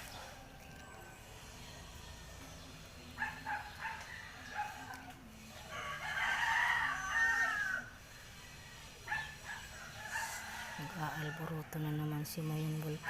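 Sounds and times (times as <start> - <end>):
rooster crowing: 5.5 - 8.0.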